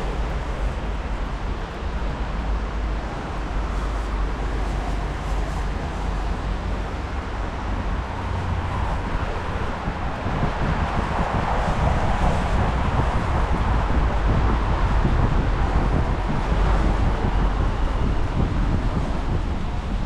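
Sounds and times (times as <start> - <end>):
road traffic: 0.0 - 20.0
wind rumbling on microphone: 0.0 - 20.0.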